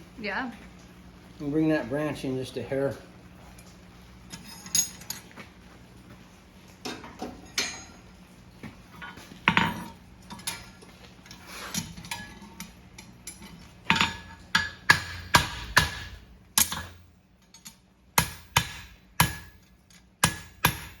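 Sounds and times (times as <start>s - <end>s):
hammer striking horseshoe on anvil: 13.9s - 17.0s, 17.6s - 21.0s.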